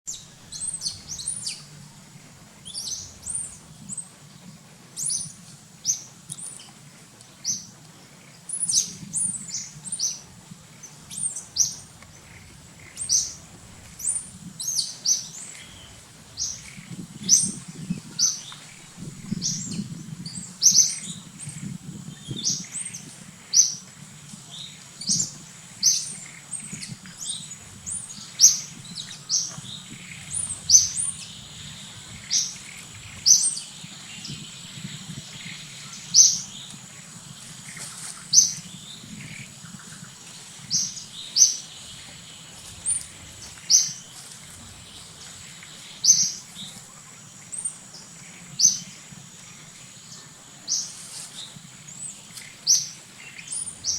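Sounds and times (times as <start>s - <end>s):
low steady hum: 0.1s - 53.9s.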